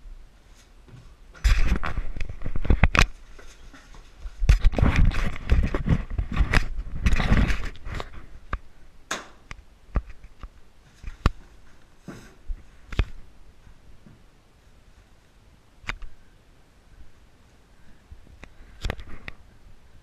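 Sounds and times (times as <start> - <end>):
rustling and scraping movement: 0.3 - 8.7, 10.0 - 15.4.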